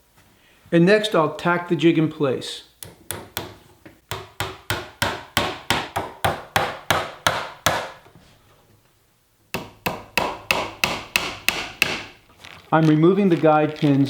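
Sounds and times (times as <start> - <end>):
hammer tapping nails into wood: 2.8 - 8.0, 9.6 - 12.1.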